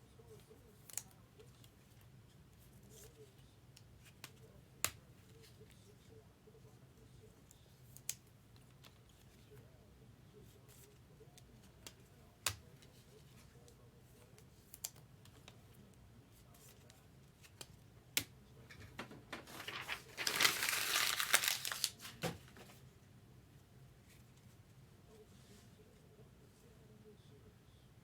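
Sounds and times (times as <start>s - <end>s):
foil card pack tearing open: 19.5s - 22.2s.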